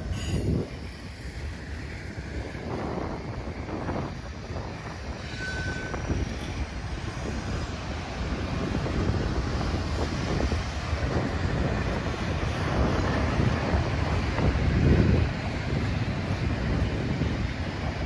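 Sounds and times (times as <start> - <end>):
train rumbling past: 0.0 - 18.0
wind buffeting microphone: 0.0 - 18.0
high wheel squeal: 4.8 - 6.6.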